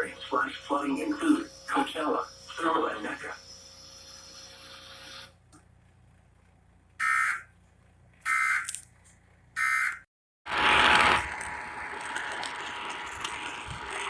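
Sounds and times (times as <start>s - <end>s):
buzzy digital data bursts: 0.0s - 4.8s, 10.5s - 14.0s.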